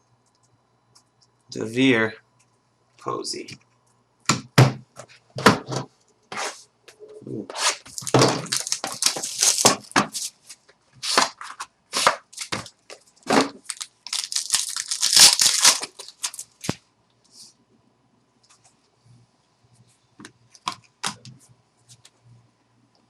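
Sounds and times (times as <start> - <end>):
wrapping tearing and crinkling: 7.7 - 16.8.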